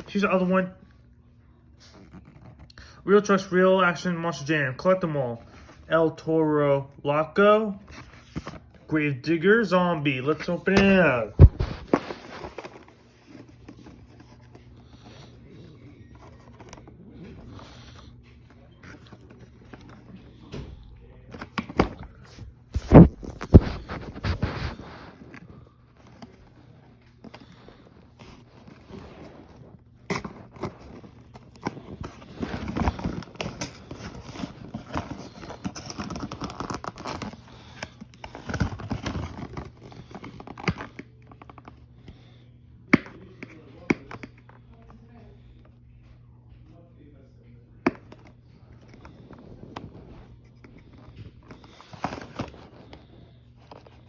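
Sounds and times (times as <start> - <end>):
faint low hum: 0.0 - 54.0
toy packaging rustling: 9.5 - 20.4, 21.3 - 41.8, 48.0 - 54.0.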